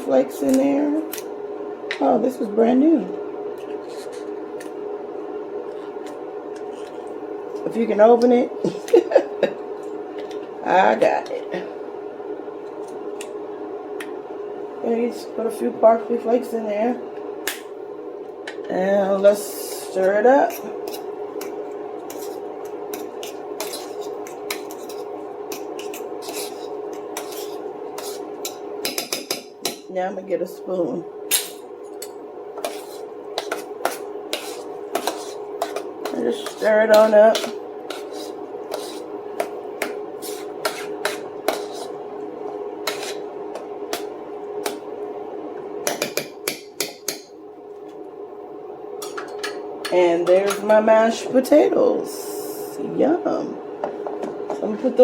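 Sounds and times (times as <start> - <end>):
steady hum: 0.0 - 55.0
utensil scraping a pot: 3.6 - 4.4, 19.8 - 29.8, 32.0 - 42.0, 42.8 - 44.8.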